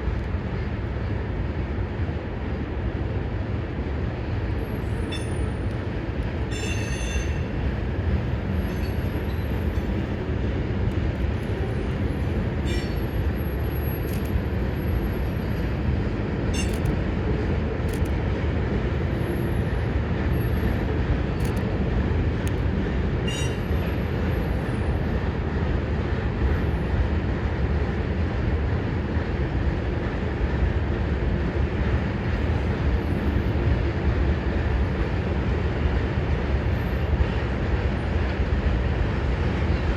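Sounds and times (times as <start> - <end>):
train wheels rumbling on rail: 0.0 - 39.9
high-pitched wheel squeals: 5.1 - 5.6, 6.5 - 7.5, 12.6 - 13.2, 16.5 - 16.9, 23.3 - 23.8.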